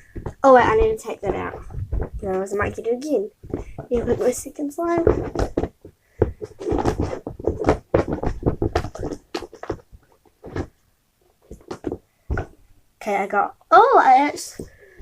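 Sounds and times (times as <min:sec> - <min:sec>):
slime squishing and crackling: 0:00.0 - 0:10.7.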